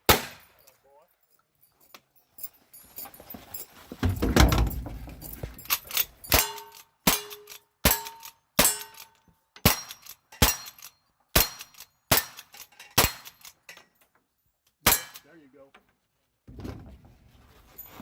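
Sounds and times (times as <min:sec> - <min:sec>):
gunshots: 0:00.0 - 0:00.5
deep thud with rattle: 0:04.0 - 0:05.7.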